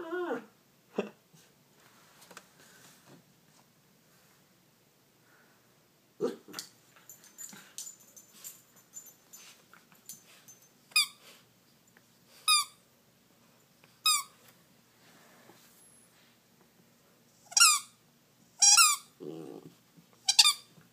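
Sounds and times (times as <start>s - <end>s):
squeaky toy squeaking: 12.5s - 12.8s, 14.0s - 14.3s, 17.5s - 17.9s, 18.6s - 19.1s, 20.2s - 20.7s.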